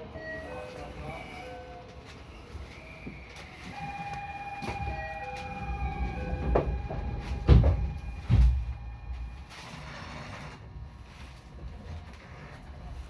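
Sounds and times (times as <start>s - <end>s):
low rumble of train: 0.0s - 9.4s
electric train whining: 0.0s - 11.4s.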